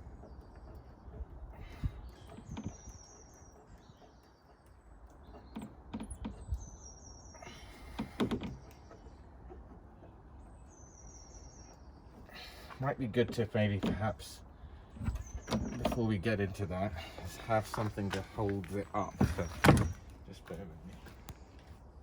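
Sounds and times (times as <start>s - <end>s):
bird chirping: 0.0s - 22.0s.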